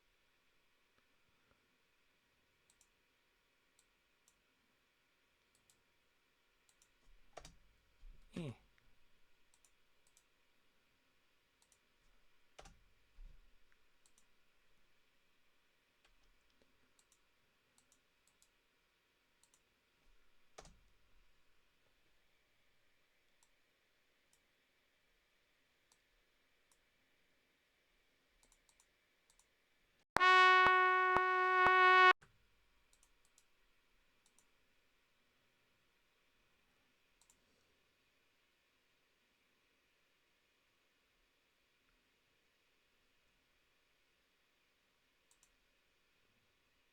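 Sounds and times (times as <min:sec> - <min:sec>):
computer mouse clicks: 0:02.7 - 0:03.0, 0:05.5 - 0:05.8, 0:06.7 - 0:07.6, 0:09.4 - 0:10.3, 0:11.6 - 0:11.9, 0:12.6 - 0:12.9, 0:14.0 - 0:14.3, 0:16.0 - 0:17.2, 0:17.8 - 0:18.6, 0:19.4 - 0:19.7, 0:20.5 - 0:20.9, 0:28.4 - 0:29.5, 0:32.9 - 0:33.5, 0:34.2 - 0:34.5, 0:37.2 - 0:37.4, 0:45.3 - 0:45.6
synthesizer note: 0:30.2 - 0:32.2.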